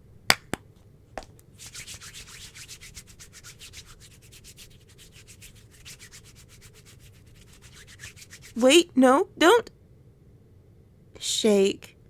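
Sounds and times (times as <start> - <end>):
quick scrubbing strokes: 1.6 - 8.7.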